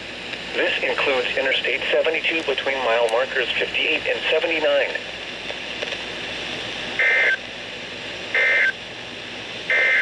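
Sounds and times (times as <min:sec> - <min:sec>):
digital data tone bursts: 0:08.4 - 0:08.8, 0:09.7 - 0:10.0.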